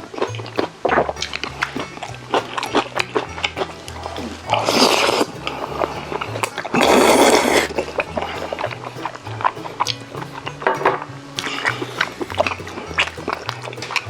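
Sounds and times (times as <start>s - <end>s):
background music with bass line: 0.0s - 14.0s.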